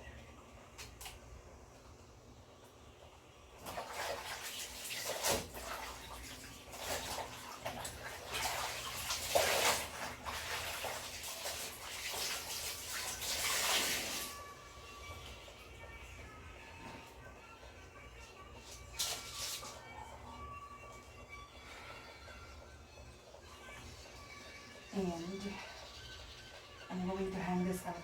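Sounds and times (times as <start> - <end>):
water sloshing and splashing: 3.6 - 15.8, 18.6 - 20.0.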